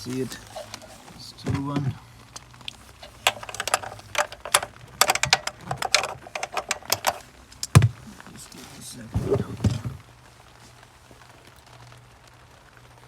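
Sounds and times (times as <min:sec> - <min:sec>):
ratchet wrench clicking: 0:03.1 - 0:07.8.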